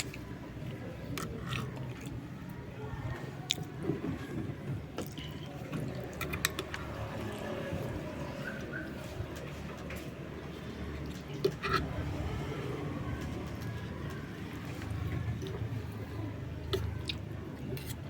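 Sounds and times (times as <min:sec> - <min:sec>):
wet chewing: 0:00.0 - 0:03.8, 0:04.9 - 0:09.8, 0:13.1 - 0:18.0.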